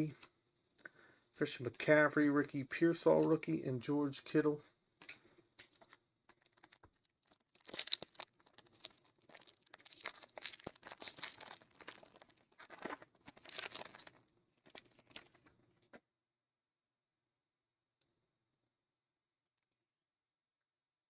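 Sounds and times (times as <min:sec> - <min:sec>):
wrapper tearing and crinkling: 0:06.3 - 0:15.4.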